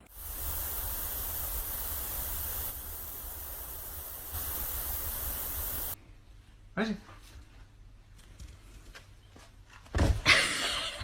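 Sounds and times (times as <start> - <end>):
steady hissing noise: 0.0 - 6.8.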